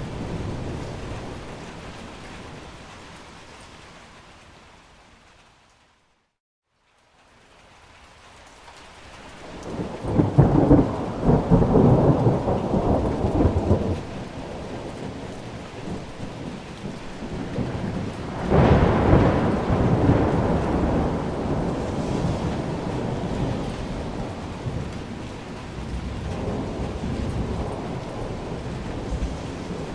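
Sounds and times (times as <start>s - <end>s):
rain falling: 0.0s - 29.9s
rolling thunder rumble: 9.5s - 29.9s.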